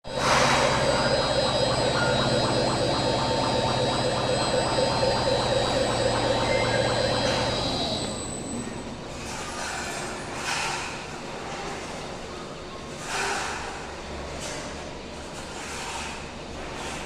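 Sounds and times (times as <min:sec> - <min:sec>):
crane machinery whine: 0:00.0 - 0:09.8.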